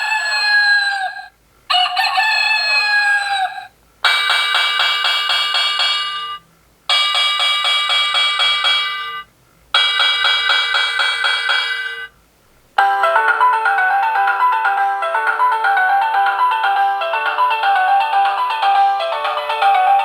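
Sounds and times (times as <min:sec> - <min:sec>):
pulsing electronic alarm ring: 0:04.0 - 0:12.1.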